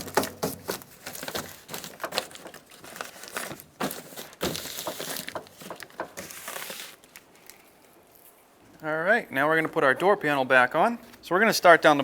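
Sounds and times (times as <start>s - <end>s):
plastic sheet crinkling: 0.0s - 8.4s.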